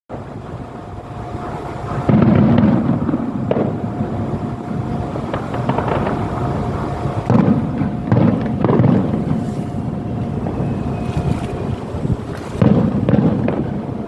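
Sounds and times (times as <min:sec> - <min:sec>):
large engine rough rumble: 0:00.1 - 0:14.0.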